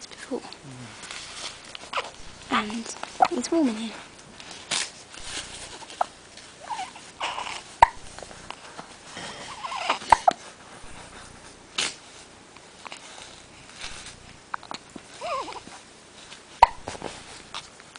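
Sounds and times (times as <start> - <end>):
baby hiccupping: 1.9 - 2.3, 5.8 - 8.1, 9.4 - 10.4, 14.5 - 15.8, 16.6 - 16.9
squeaky baby noises: 5.9 - 8.0, 9.5 - 10.4, 14.6 - 15.8.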